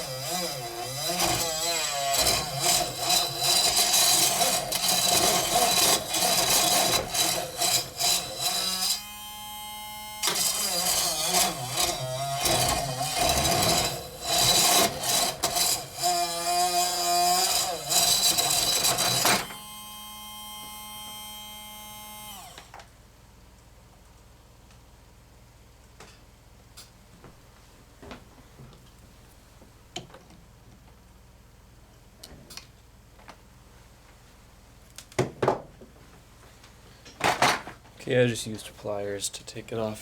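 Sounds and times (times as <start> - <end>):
hacksaw rasping on metal shaft: 0.0 - 9.1, 10.2 - 19.6
small motor whine: 0.0 - 22.8.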